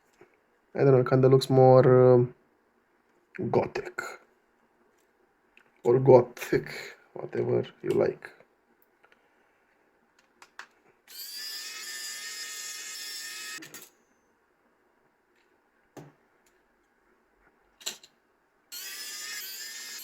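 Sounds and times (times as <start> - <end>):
small electric motor whining: 11.1 - 13.6, 18.7 - 20.0.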